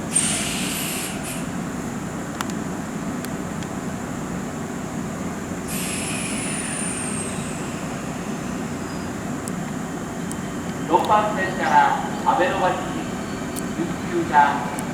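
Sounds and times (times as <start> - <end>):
electric train humming: 0.0 - 14.9
air hissing: 0.1 - 1.6, 5.7 - 9.6.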